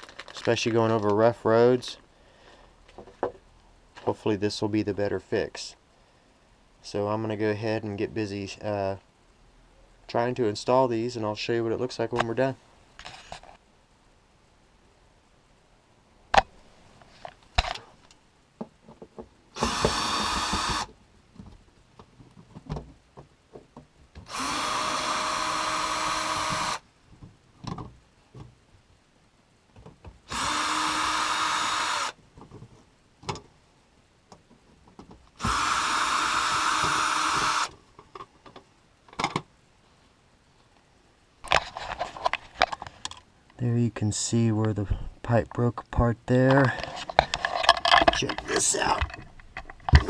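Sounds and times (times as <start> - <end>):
cordless drill bursts: 19.6 - 20.9, 24.3 - 26.8, 30.3 - 32.2, 35.4 - 37.7
handling clicks and knocks: 46.4 - 50.0.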